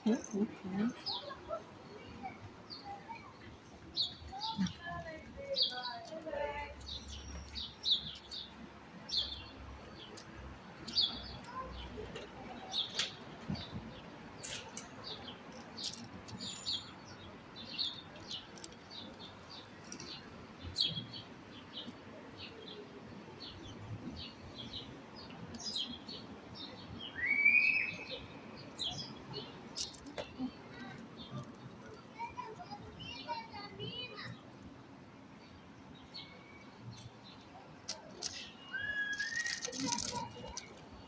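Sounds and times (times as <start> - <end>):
small birds chirping: 0.0 - 41.0
bird call rising and holding: 38.7 - 39.8.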